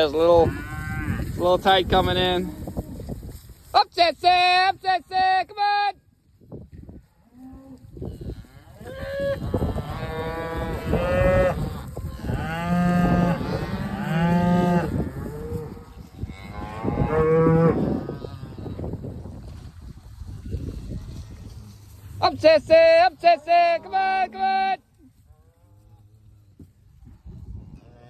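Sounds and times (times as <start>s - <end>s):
cattle mooing: 8.2s - 18.6s.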